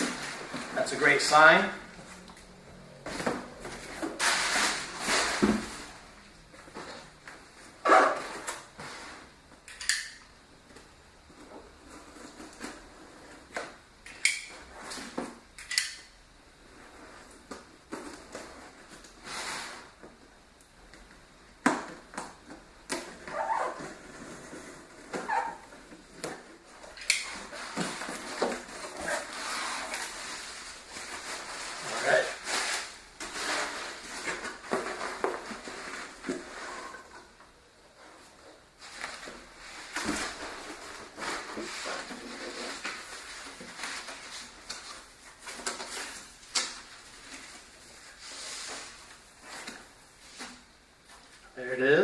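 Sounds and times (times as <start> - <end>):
cardboard boxes scraping and rustling: 0.0 - 2.2, 3.0 - 9.4, 23.0 - 51.4.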